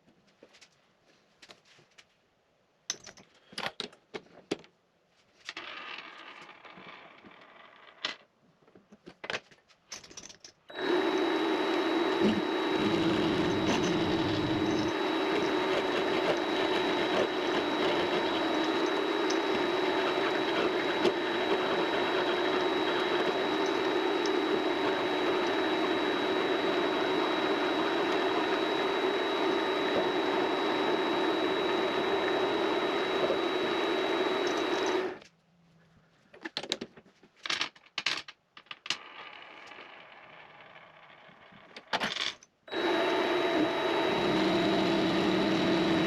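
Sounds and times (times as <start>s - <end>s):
tools and parts clicking: 9.0s - 10.7s
lathe humming with high whine: 10.7s - 35.2s, 42.7s - 46.0s.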